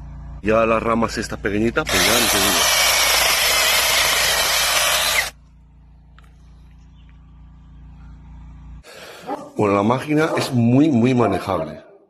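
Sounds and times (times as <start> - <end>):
mini chainsaw cutting branches: 1.9 - 5.4.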